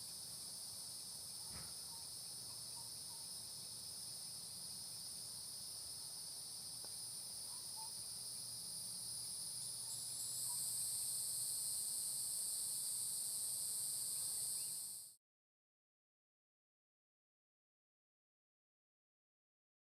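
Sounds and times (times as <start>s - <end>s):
insects buzzing drone: 0.0s - 15.2s.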